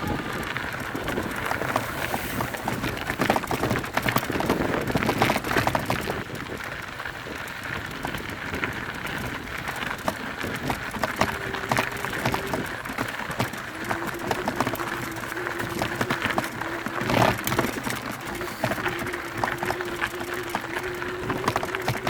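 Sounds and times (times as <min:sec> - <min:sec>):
bike rattling and clicking: 0:00.0 - 0:22.0
bike tyres crackling over dirt: 0:00.0 - 0:22.0.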